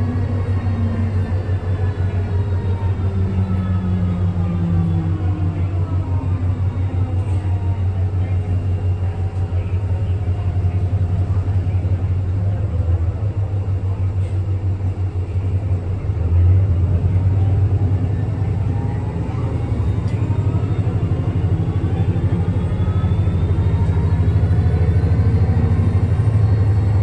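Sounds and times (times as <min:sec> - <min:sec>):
bus engine low rumble: 0:00.0 - 0:27.0.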